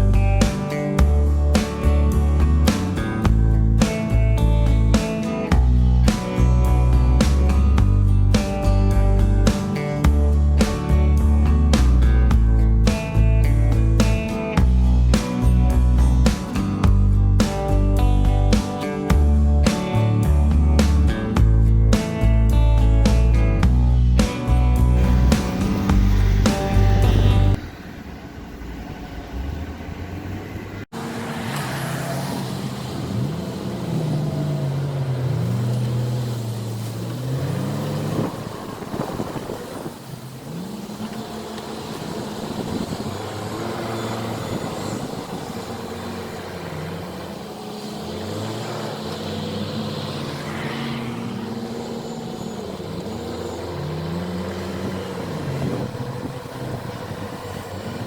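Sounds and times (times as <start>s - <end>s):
diesel engine working under load: 22.8s - 58.0s.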